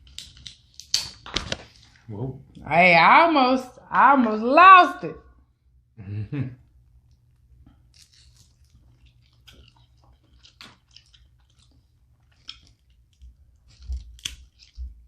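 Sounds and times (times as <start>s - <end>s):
close chewing and mouth sounds: 7.0s - 15.0s
soft clicks and crackles: 7.0s - 15.0s.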